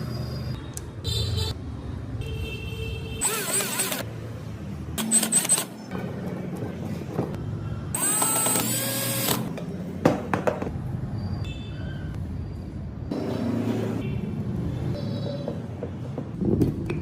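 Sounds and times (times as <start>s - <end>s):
power tools whining: 3.2s - 4.1s, 8.0s - 9.5s.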